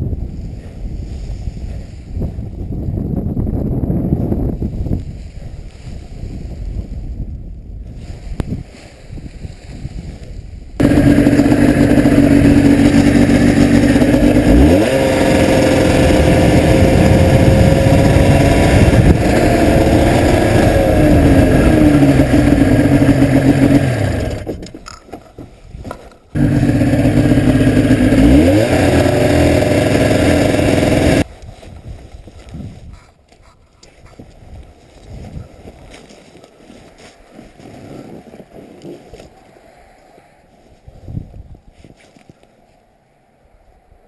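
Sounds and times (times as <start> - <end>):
wind on microphone: 0.0 - 26.0, 27.4 - 36.1, 40.6 - 42.4
paramotor engine and propeller: 10.8 - 25.1, 26.4 - 31.2.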